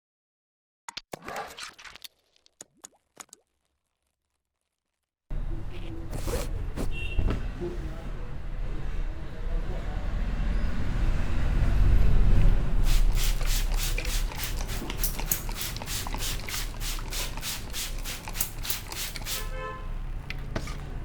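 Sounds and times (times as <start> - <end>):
low rumble of traffic: 5.3 - 21.0.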